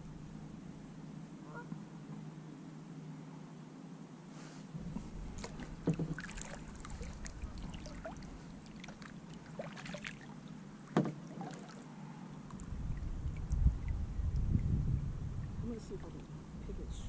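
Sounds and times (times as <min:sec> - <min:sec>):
knocks against plastic kayak: 0:05.4 - 0:06.3, 0:11.0 - 0:11.2.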